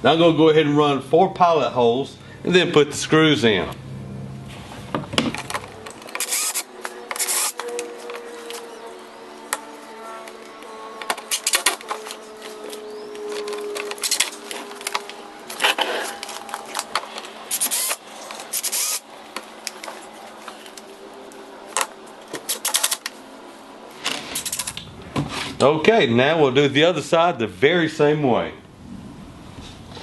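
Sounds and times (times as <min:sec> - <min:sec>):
power drill whining: 0:05.4 - 0:19.1.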